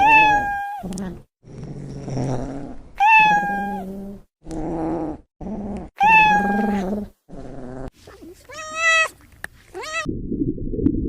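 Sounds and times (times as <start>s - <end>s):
cat yowling: 0.0s - 0.8s, 3.0s - 3.8s, 6.0s - 6.8s, 8.2s - 10.1s
cat growling: 0.0s - 10.1s.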